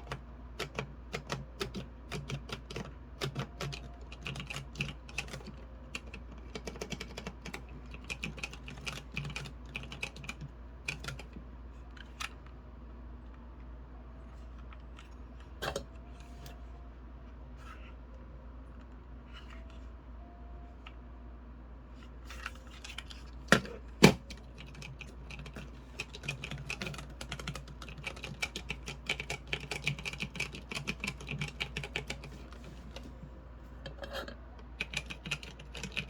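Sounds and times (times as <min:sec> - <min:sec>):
keyboard typing: 0:00.0 - 0:12.4, 0:22.4 - 0:33.2, 0:34.4 - 0:36.0.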